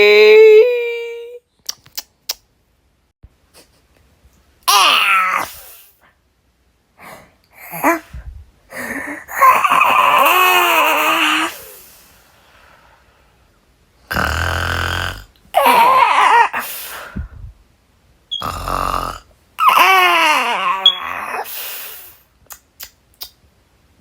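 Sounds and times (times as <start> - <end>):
person yawning: 4.7 - 5.9, 7.6 - 11.8, 19.6 - 21.6
mock snore: 14.1 - 15.3, 18.3 - 19.3
short vocal noises: 18.3 - 23.4.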